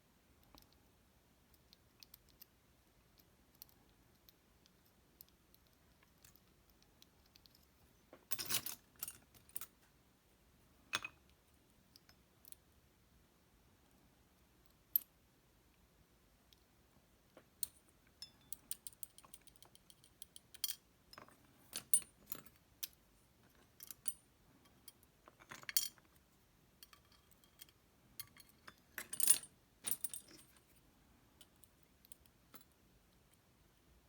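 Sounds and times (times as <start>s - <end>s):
lock metal clicks and clinks: 7.2s - 9.8s, 17.6s - 26.2s.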